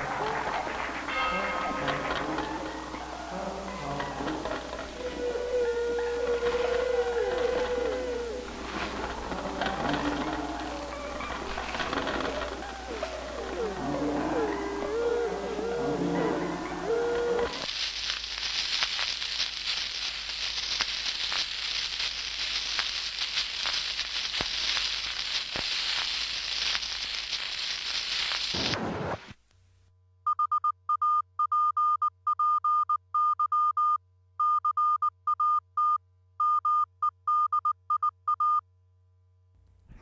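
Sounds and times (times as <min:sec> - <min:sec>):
crackling hiss: 0:00.0 - 0:29.6.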